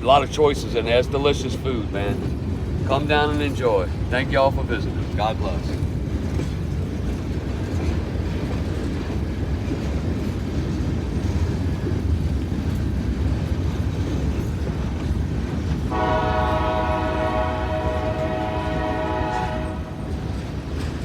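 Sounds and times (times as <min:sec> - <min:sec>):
train wheels rumbling on rails: 0:00.0 - 0:21.0
locomotive horn: 0:15.9 - 0:20.4.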